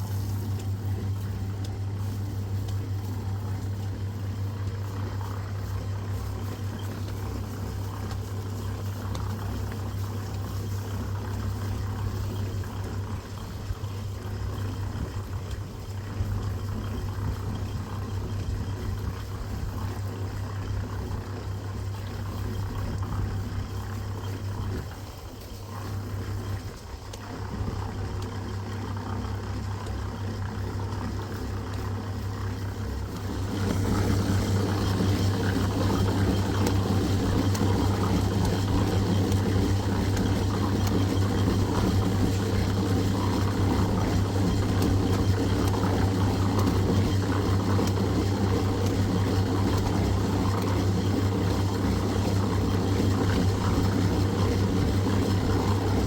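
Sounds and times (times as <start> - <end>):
engine humming: 22.4 - 56.0.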